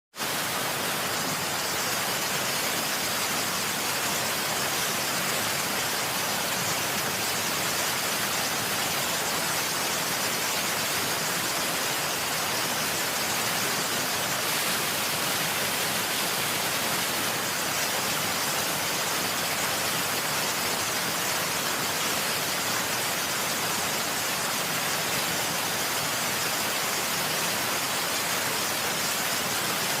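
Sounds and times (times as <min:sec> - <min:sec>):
waterfall rushing: 0:00.2 - 0:30.0.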